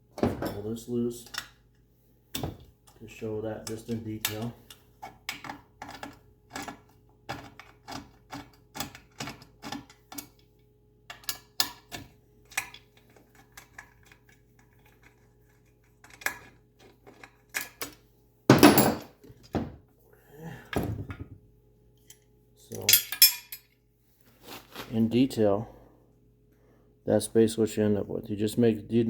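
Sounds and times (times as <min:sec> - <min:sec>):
faint steady hum: 0:00.0 - 0:29.0
hand tools clicking on metal: 0:03.6 - 0:10.3.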